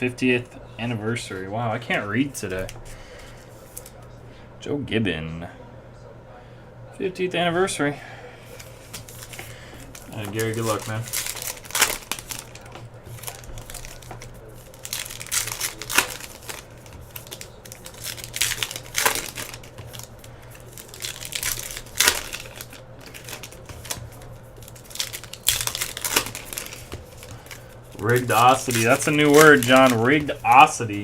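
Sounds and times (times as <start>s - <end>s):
cards being handled: 8.5s - 31.0s
foil wrapper crinkling and tearing: 8.5s - 31.0s.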